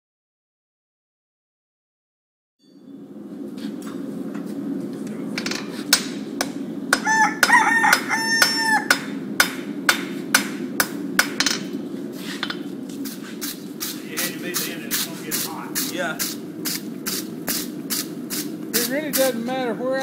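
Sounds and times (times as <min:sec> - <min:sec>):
hammer striking hot iron: 0:05.4 - 0:11.8
rooster crowing: 0:07.0 - 0:09.1.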